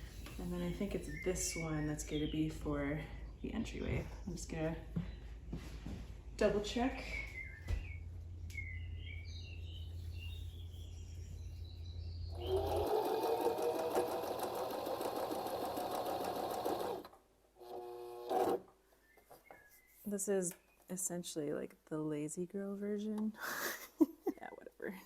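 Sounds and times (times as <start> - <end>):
sewing machine stitching: 12.4 - 18.6.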